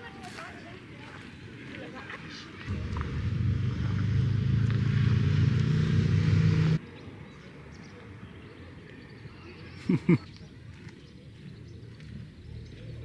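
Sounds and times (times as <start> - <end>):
quiet outdoor background: 0.0 - 13.0
motor humming: 2.7 - 6.8.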